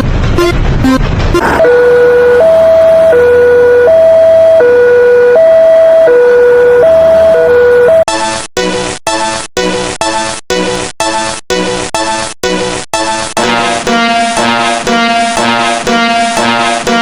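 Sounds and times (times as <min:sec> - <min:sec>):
two-tone emergency siren: 0:00.0 - 0:08.1, 0:13.4 - 0:17.0.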